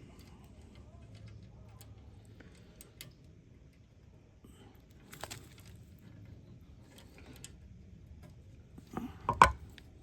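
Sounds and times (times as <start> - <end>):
metal clank: 9.3 - 9.6.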